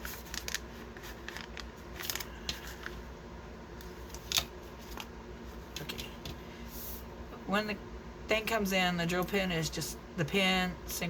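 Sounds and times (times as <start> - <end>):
plastic bags rustling: 0.0 - 3.0.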